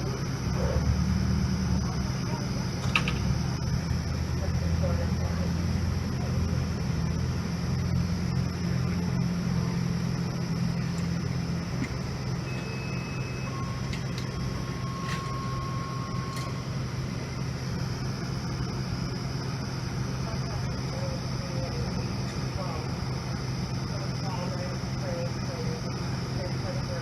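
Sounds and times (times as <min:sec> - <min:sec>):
fire truck engines idling: 0:00.0 - 0:27.0
low held tone: 0:07.8 - 0:26.8
thin high tone: 0:12.3 - 0:19.6.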